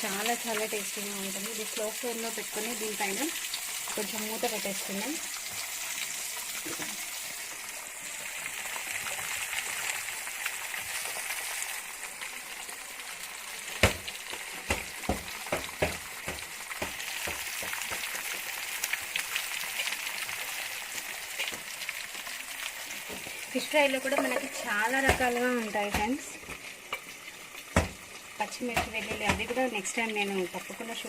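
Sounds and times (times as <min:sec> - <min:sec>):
fish sizzling in oil: 0:00.0 - 0:31.0
sharp pops and taps: 0:13.7 - 0:18.4, 0:25.0 - 0:27.1, 0:27.7 - 0:28.0.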